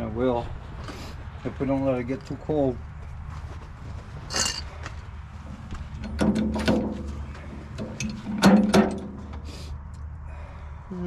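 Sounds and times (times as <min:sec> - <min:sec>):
heavy metal knocks and scraping: 0:05.4 - 0:09.5
ringing metal clunks: 0:06.0 - 0:09.3.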